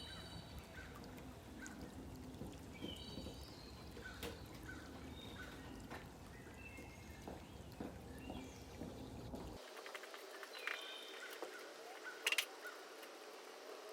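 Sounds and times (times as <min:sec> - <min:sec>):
birds chirping: 0:00.0 - 0:13.4.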